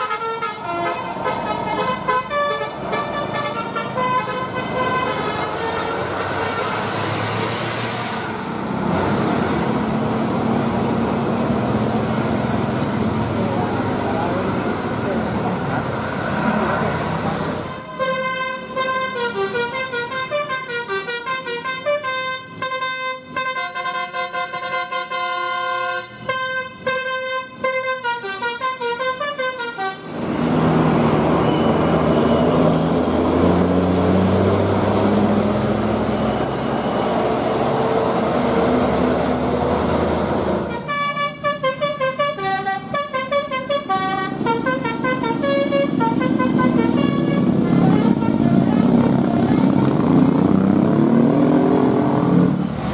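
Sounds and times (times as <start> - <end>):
multi-trumpet bus horn melody: 0.0 - 7.1, 17.6 - 30.2, 40.6 - 49.7
bus engine: 0.0 - 52.9
road noise: 0.0 - 52.9.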